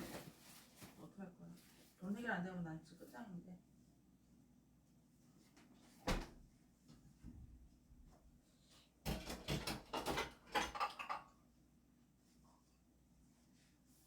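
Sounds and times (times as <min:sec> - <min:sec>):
cupboard doors and dishes clattering: 0:09.0 - 0:11.4.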